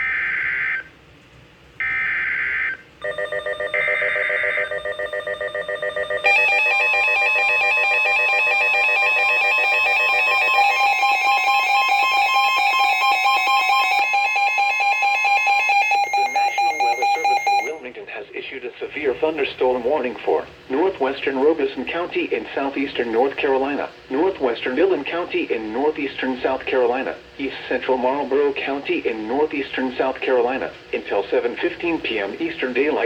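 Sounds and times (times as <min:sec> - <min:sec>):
electronic alert tone: 0:03.0 - 0:17.8
screechy digital data bursts: 0:06.2 - 0:17.8.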